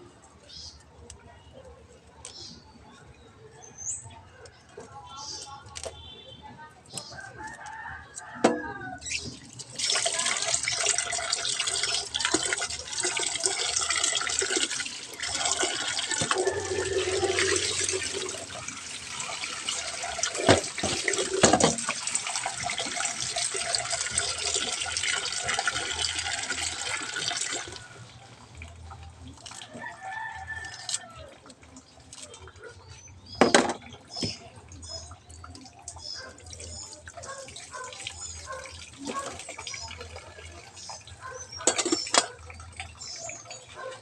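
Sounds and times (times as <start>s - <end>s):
tap water running into sink: 8.6s - 31.2s.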